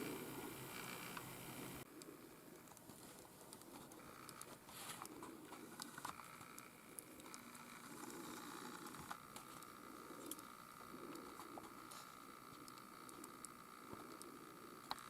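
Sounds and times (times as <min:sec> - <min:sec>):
faint small clicks: 0:08.8 - 0:10.5.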